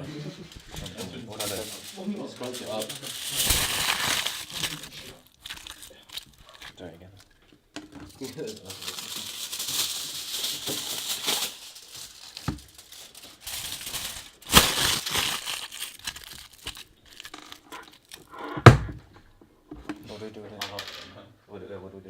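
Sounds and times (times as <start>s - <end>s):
crinkly material scrunched by hand: 0.5s - 7.3s, 8.2s - 18.3s.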